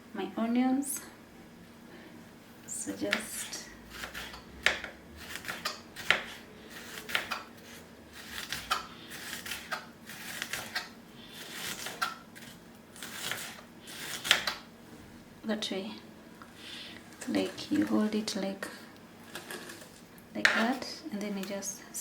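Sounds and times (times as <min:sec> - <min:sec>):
knife slicing onion: 0:03.0 - 0:14.7.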